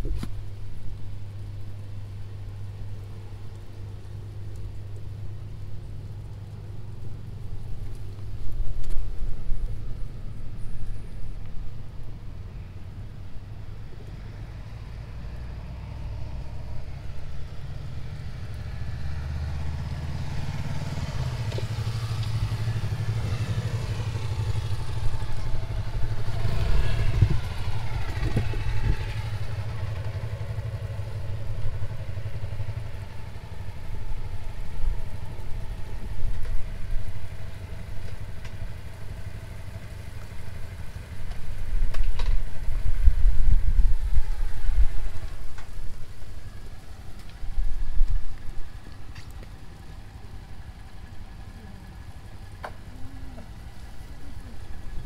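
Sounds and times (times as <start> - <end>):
vehicle engine passing: 12.8 - 55.0.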